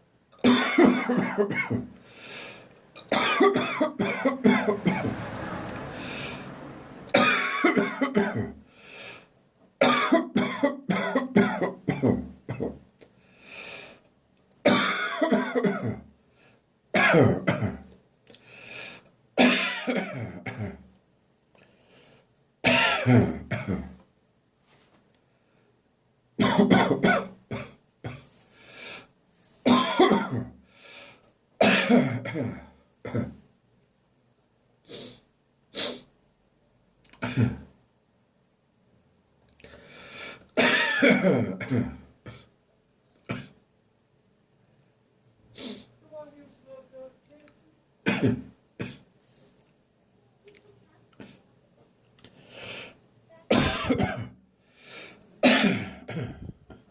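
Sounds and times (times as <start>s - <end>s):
person dry coughing: 0.4s - 2.0s, 3.0s - 4.8s, 9.8s - 12.8s, 14.7s - 16.0s, 17.0s - 17.8s, 19.4s - 20.8s, 22.7s - 24.0s, 26.4s - 28.3s, 29.7s - 30.5s, 31.6s - 33.4s, 37.2s - 37.7s, 40.6s - 42.5s, 48.1s - 49.0s, 53.5s - 54.4s, 55.4s - 56.6s.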